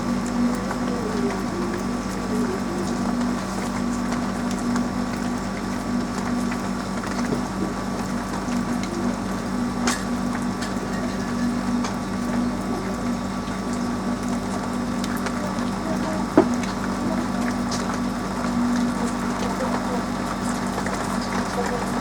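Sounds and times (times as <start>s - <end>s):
rain on a roof: 0.0s - 22.0s
steady low hum: 0.0s - 22.0s
drip ticks: 2.8s - 21.5s.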